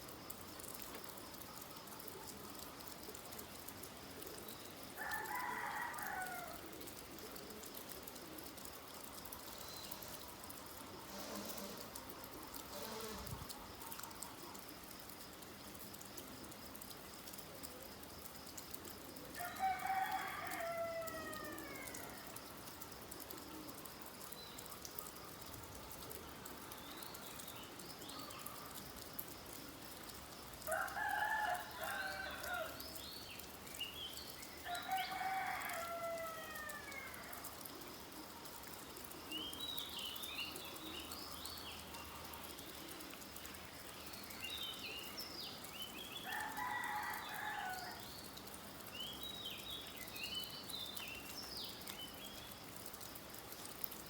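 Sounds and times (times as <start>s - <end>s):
rain pattering: 0.0s - 54.0s
rooster crowing: 19.4s - 22.1s, 34.7s - 37.1s, 46.2s - 48.0s.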